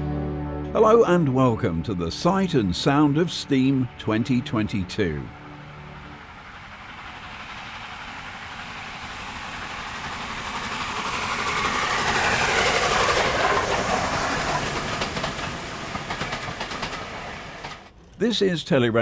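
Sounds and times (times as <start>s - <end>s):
steam train passing: 0.8s - 18.4s
wheels clicking over rail joints: 6.6s - 18.3s.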